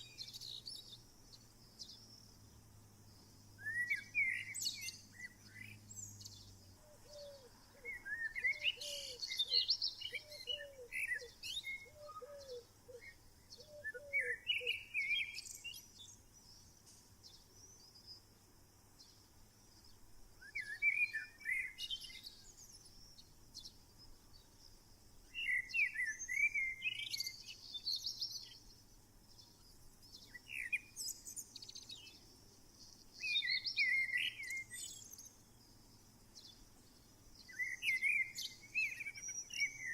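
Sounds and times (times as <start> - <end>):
lower bird call: 3.6 - 15.9.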